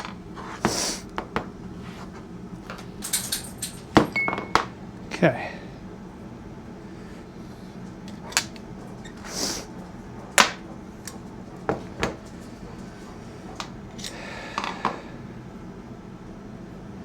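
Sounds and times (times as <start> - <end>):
metal parts clicking and tapping: 2.7 - 4.7.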